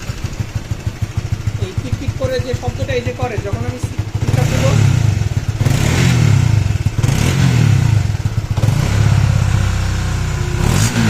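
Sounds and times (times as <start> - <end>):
motorcycle engine blipping and idling: 0.0 - 10.7.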